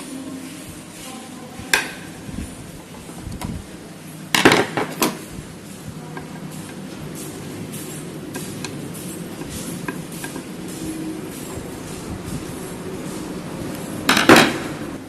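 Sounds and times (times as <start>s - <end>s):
metal clinks and knocks: 6.3s - 14.7s.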